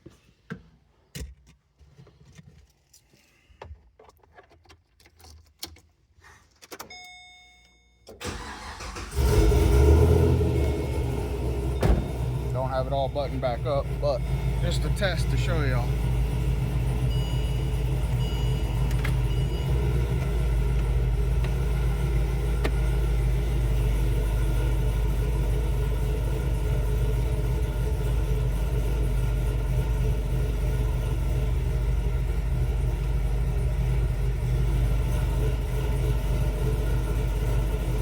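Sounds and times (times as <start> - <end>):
car engine idling: 8.2 - 38.0
short high beeps: 17.0 - 20.0.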